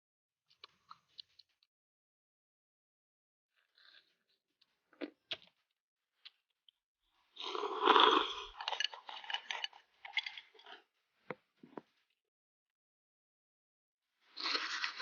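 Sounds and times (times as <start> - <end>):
crackly chewing: 0.5 - 1.7, 3.6 - 6.5, 7.4 - 10.9, 14.4 - 15.0.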